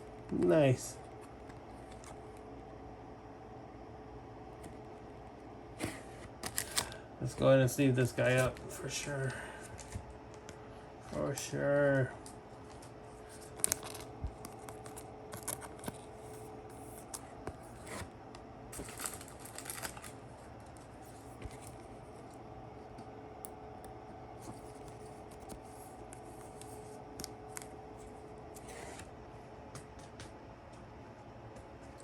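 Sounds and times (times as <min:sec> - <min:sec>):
faint steady hum: 0:00.0 - 0:32.0
cards and plastic sleeve rustling: 0:00.3 - 0:02.5, 0:05.8 - 0:23.0, 0:23.8 - 0:29.2.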